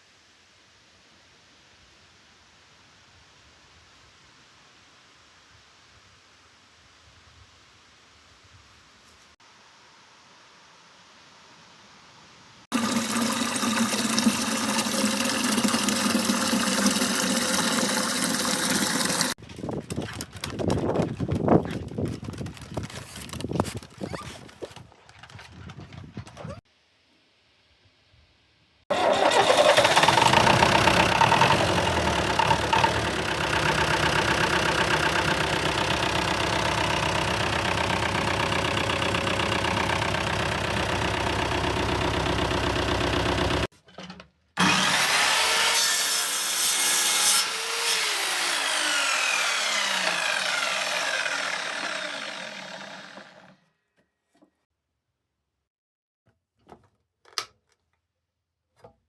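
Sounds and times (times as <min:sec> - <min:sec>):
wood being sawn: 0:12.7 - 0:19.4, 0:28.9 - 0:43.7, 0:44.6 - 0:53.6.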